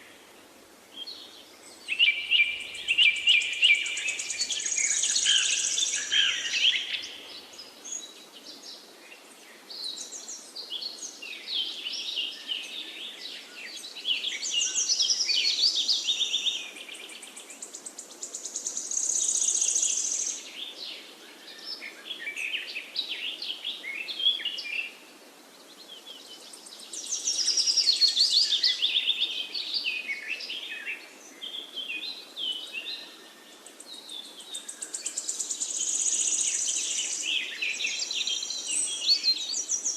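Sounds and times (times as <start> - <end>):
songbirds singing: 0.0 - 39.9
steady background hiss: 0.0 - 39.9.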